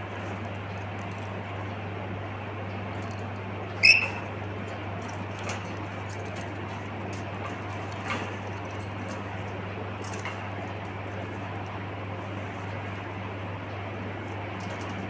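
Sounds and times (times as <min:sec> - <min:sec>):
bird squeaking: 0:03.8 - 0:04.3.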